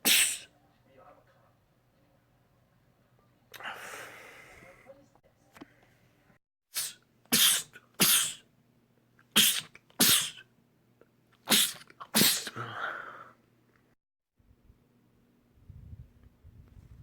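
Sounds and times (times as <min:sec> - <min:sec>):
man sneezing: 0:00.0 - 0:00.5, 0:06.7 - 0:08.4, 0:09.4 - 0:10.4, 0:11.4 - 0:13.2.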